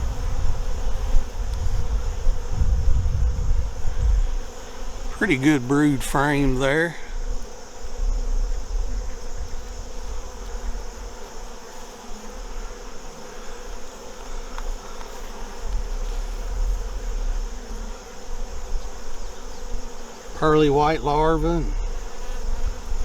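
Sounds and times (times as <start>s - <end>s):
bees buzzing: 0.0s - 23.0s
low rumble: 7.1s - 11.2s, 15.5s - 18.7s.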